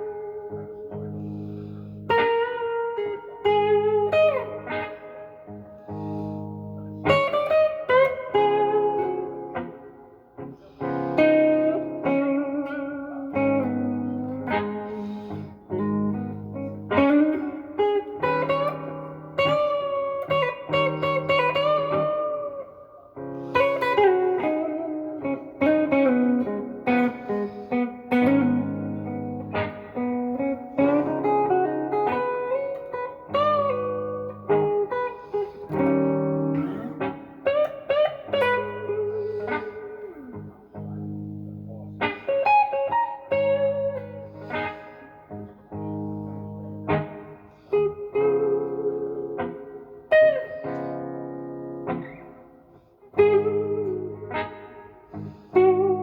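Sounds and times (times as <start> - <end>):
electric guitar blues lead: 0.0 - 56.0
sustained low guitar chords: 23.2 - 50.0.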